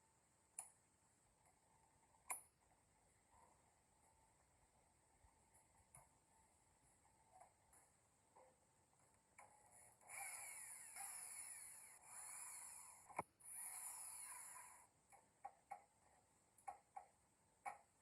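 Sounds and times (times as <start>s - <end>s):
tool rasping and scraping: 9.9s - 14.9s.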